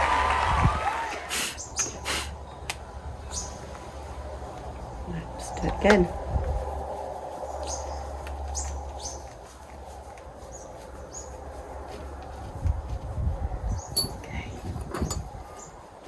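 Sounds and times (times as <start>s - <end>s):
birds chirping: 0.0s - 6.2s, 6.8s - 12.2s, 13.6s - 16.0s
tools knocking and thudding: 13.9s - 15.3s.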